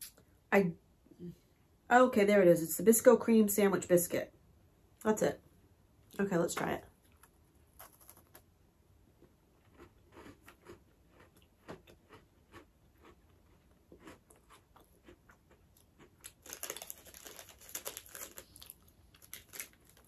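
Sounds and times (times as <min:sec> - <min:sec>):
crunching and chewing biscuit: 0:06.9 - 0:20.0.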